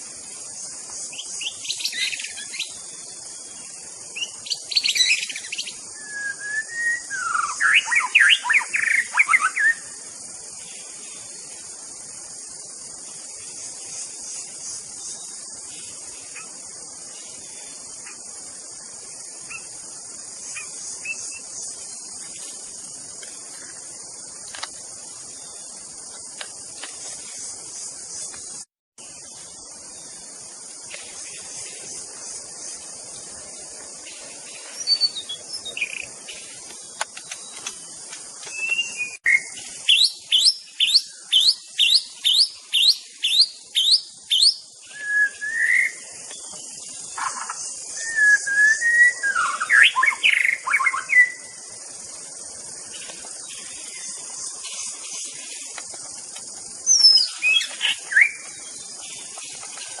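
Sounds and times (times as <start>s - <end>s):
steady high hiss: 0.0s - 60.0s
bird singing whistled notes: 1.0s - 3.0s, 4.1s - 10.0s, 20.5s - 22.2s, 34.6s - 36.5s, 38.4s - 51.6s, 56.8s - 60.0s.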